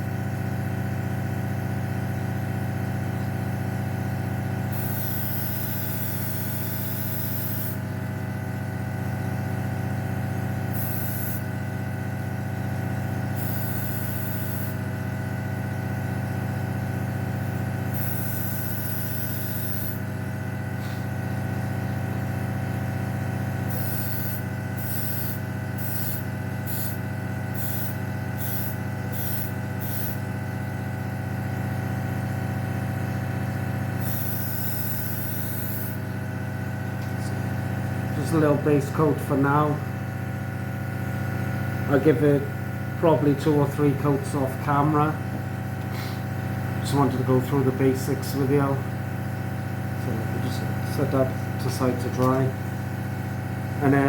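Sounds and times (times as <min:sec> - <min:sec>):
compressor motor humming: 0:00.0 - 0:54.0
airbrush spraying hiss: 0:04.7 - 0:07.8, 0:10.7 - 0:11.5, 0:13.4 - 0:14.8, 0:17.9 - 0:20.1, 0:23.7 - 0:30.3, 0:34.0 - 0:36.0.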